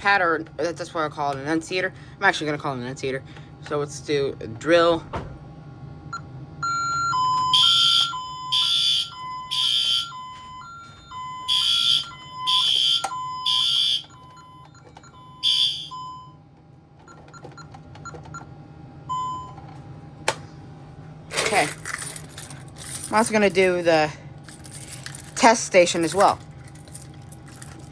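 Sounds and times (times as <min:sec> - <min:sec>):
two-tone beeping: 0:06.6 - 0:16.3
fire alarm horn blasts: 0:06.6 - 0:16.4.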